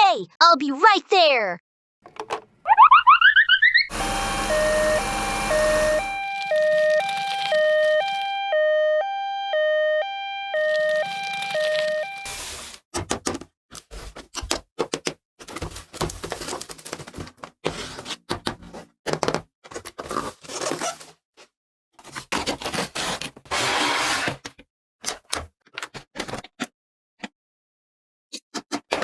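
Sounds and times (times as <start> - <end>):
packaging rustling: 4.5 - 8.4, 10.6 - 12.8, 15.8 - 17.3.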